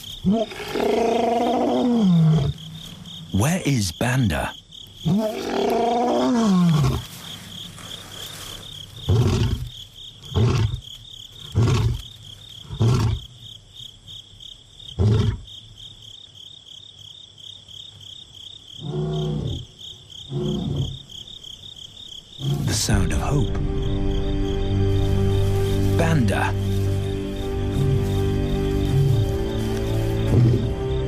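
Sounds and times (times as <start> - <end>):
crickets chirping: 0.0 - 31.0
lion roaring: 0.2 - 2.6, 5.0 - 7.1, 9.0 - 9.7, 18.8 - 19.6, 22.4 - 23.0.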